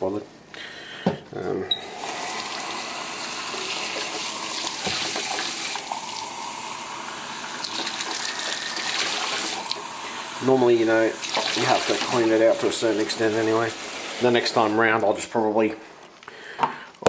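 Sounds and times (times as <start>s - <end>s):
tap water running into sink: 1.9s - 14.7s.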